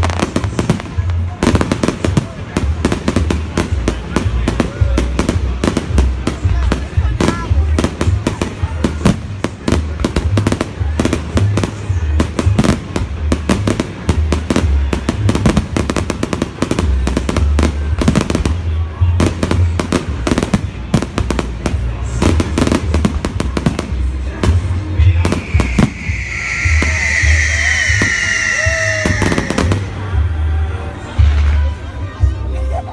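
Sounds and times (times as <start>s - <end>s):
fireworks exploding: 0.0s - 30.2s
high wavering whistle: 25.3s - 29.7s.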